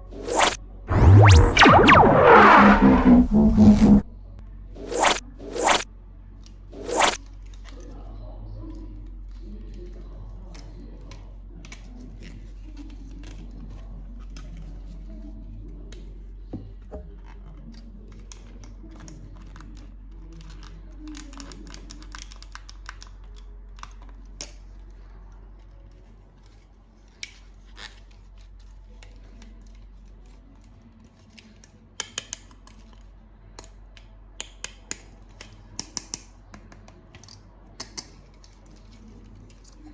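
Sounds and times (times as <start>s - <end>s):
low hum: 0.0s - 5.8s, 6.7s - 7.2s.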